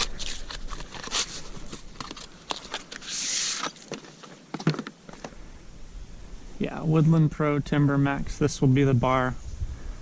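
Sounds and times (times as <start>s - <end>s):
packaging rustling crinkle: 0.0s - 5.3s.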